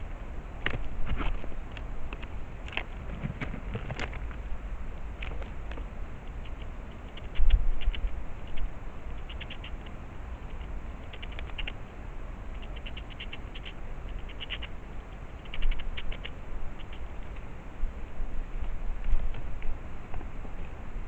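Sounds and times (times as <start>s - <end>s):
low steady rumble: 0.0s - 21.0s
frog calling: 6.4s - 9.9s, 12.5s - 17.4s.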